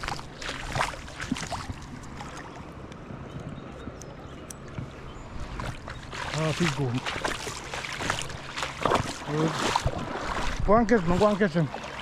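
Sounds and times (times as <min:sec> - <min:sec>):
river water rushing: 0:05.3 - 0:12.0.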